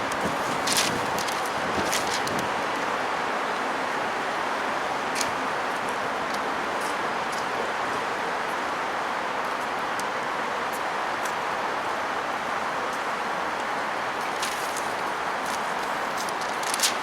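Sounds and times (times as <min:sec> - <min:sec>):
strong wind rushing: 0:00.0 - 0:03.0
faint light ticks: 0:09.4 - 0:10.1.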